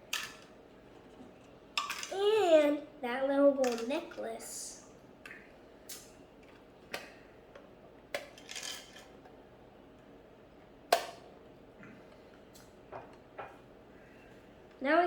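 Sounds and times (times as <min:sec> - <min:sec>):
toy pieces clicking and clinking: 0:03.6 - 0:04.2.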